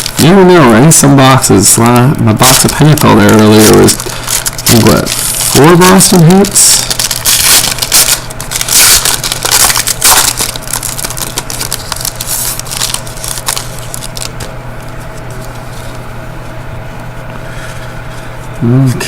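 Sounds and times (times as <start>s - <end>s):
wrapper tearing and crinkling: 2.4s - 14.5s.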